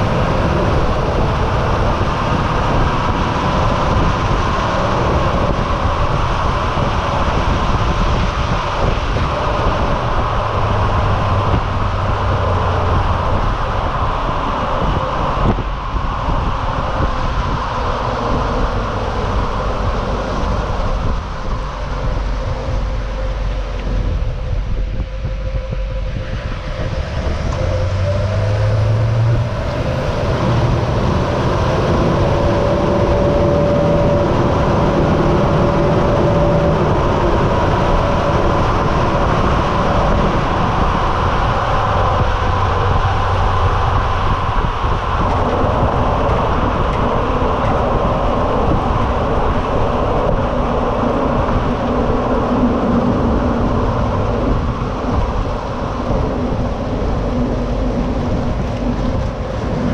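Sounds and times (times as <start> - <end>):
diesel engine rumble: 0.0 - 59.9
road and wind noise: 0.0 - 59.9.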